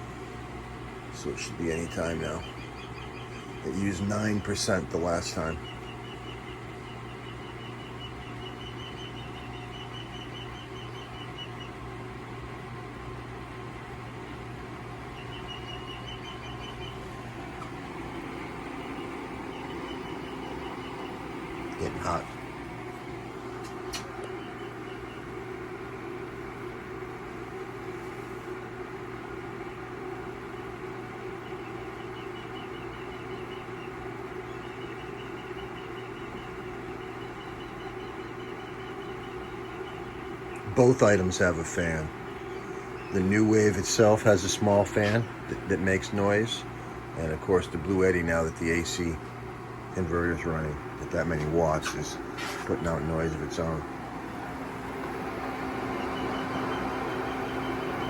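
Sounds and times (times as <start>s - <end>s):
cooktop hum and fan noise: 0.0s - 58.0s
high repeated bird chick chirps: 1.2s - 12.2s, 14.1s - 23.0s, 24.2s - 26.7s, 29.6s - 49.2s, 55.2s - 58.0s
rapid high chirps: 15.0s - 22.9s.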